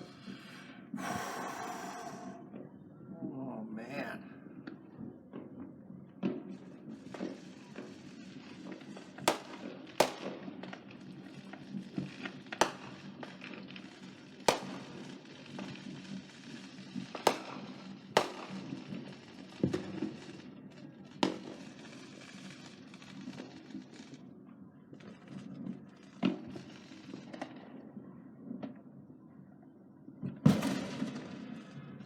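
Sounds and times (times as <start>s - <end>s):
distant firework pops and crackles: 4.5s - 29.1s, 30.1s - 32.0s
loud firework bangs: 9.3s - 10.7s, 12.5s - 13.4s, 14.5s - 15.2s, 17.2s - 19.0s, 30.4s - 32.0s.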